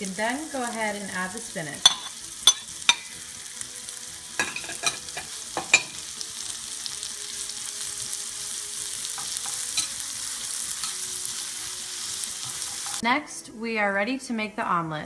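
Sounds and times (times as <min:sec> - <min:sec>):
mushrooms sizzling in a pan: 0:00.0 - 0:13.2
utensil clinking against pan: 0:01.8 - 0:03.1, 0:04.4 - 0:06.0.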